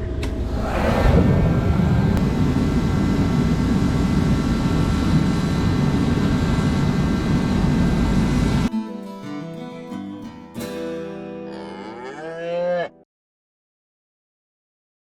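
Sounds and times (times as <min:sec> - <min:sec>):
motor and heater droning: 0:00.0 - 0:08.7.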